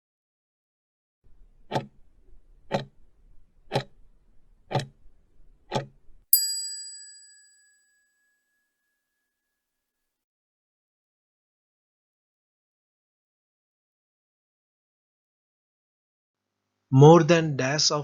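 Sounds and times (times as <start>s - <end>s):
bell ding: 6.4s - 8.6s.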